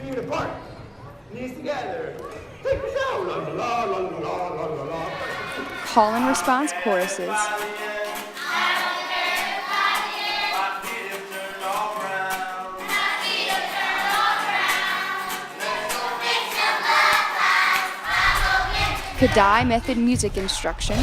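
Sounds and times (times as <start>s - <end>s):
group singing call-and-response: 4.7s - 19.6s
music: 4.8s - 21.0s.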